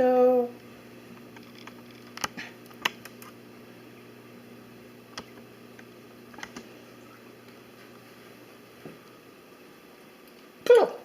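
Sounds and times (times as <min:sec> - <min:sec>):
faint low hum: 0:00.0 - 0:11.0
light clicks: 0:05.1 - 0:06.7.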